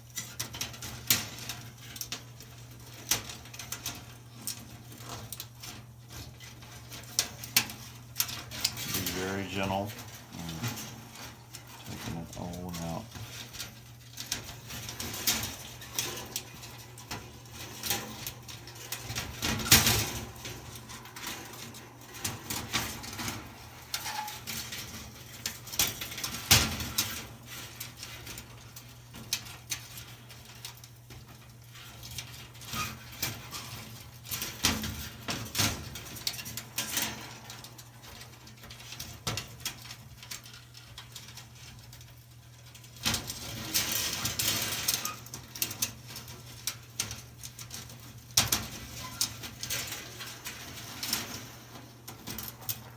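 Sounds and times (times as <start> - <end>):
heating wire rattling and scraping: 0.0 - 52.9
steady low hum: 5.0 - 26.6.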